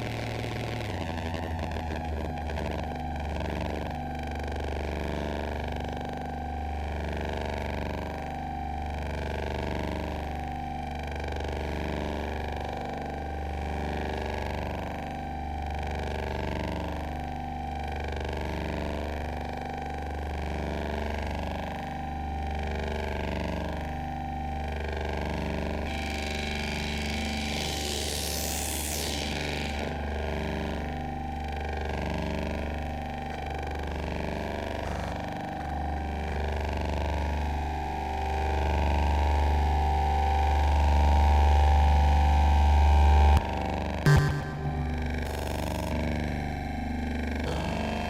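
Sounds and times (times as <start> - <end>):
synthesizer electronic drone: 0.0 - 48.0.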